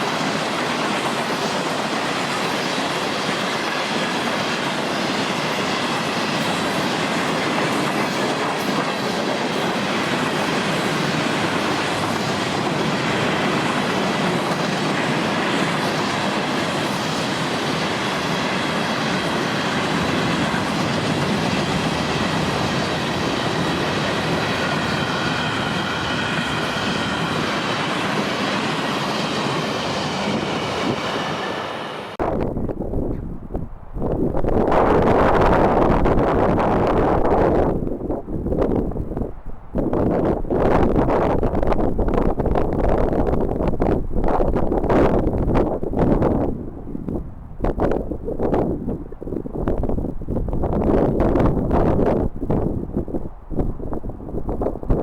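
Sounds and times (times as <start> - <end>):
train wheels clicking over rail joints: 0.0 - 32.2.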